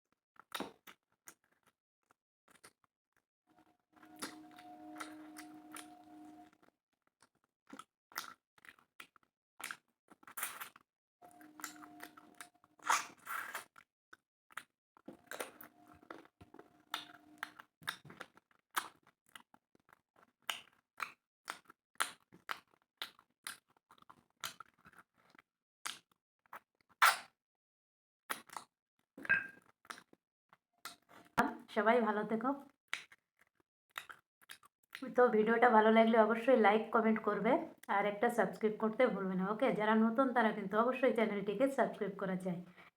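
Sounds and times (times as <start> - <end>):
person chewing food: 4.0 - 6.5, 7.7 - 13.8, 14.5 - 27.0, 32.9 - 35.0.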